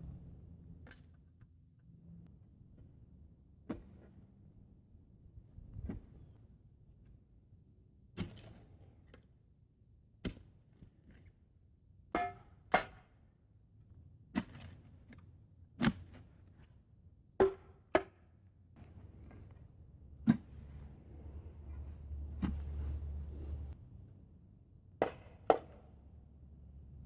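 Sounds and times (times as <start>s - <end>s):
digging tool striking ground: 20.2s - 20.8s, 22.3s - 22.9s.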